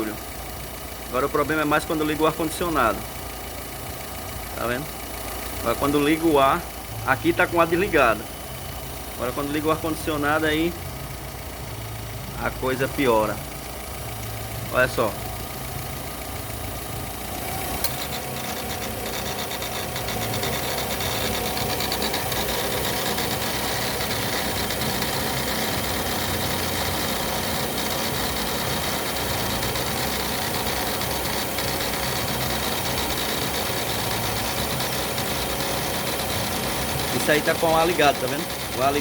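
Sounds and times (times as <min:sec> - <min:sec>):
car engine idling: 0:00.0 - 0:39.0
rasping belt rubbing noise: 0:17.8 - 0:39.0.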